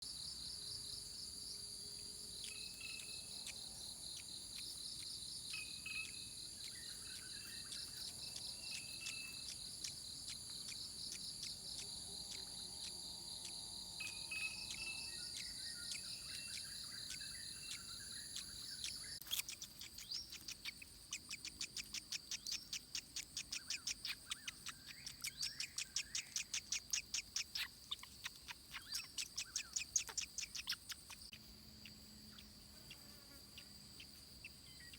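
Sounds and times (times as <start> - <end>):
high insect drone: 0.1 - 19.5
fast pulsing chirp: 2.4 - 31.4
birds whistling and calling: 4.2 - 31.2.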